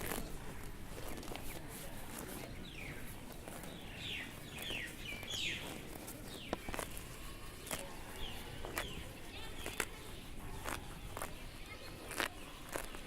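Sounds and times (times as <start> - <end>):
cows tearing and chewing grass: 0.0 - 13.0
bird chirping: 2.6 - 13.0.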